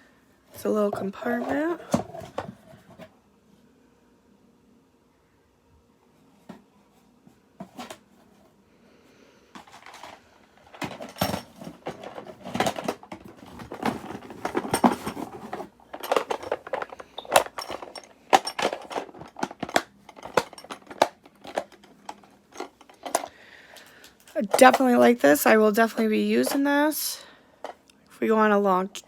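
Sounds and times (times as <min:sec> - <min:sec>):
metal utensils clinking: 0:13.8 - 0:21.8.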